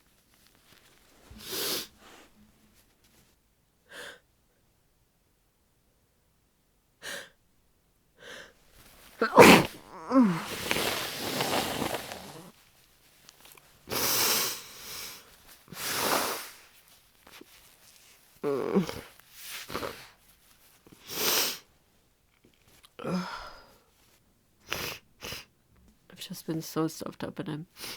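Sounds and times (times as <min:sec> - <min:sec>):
short nasal bursts: 0:01.4 - 0:02.2, 0:09.2 - 0:12.5, 0:13.9 - 0:16.7
woman groaning: 0:09.2 - 0:12.5, 0:18.4 - 0:19.1
woman sneezing: 0:09.2 - 0:12.5.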